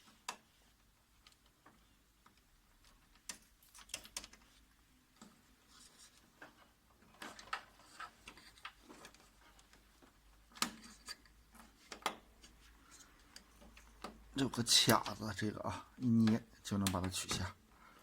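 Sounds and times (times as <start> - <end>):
plastic parts clicking and knocking: 1.2 - 5.4, 6.4 - 15.5.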